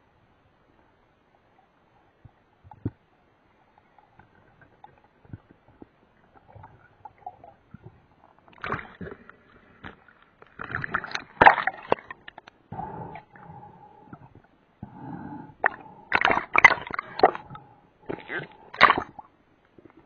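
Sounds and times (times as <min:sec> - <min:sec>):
water sloshing and gurgling: 0:01.9 - 0:20.0.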